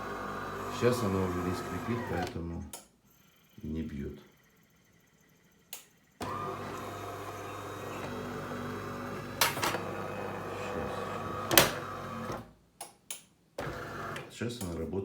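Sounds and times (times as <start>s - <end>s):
coffee machine motor humming: 0.0s - 2.7s, 4.4s - 12.4s, 13.6s - 14.8s
coffee machine clunks: 6.2s - 12.4s.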